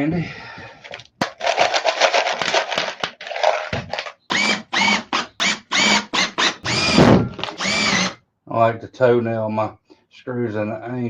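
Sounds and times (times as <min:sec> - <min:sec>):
cordless drill driving screws: 0:04.3 - 0:08.2.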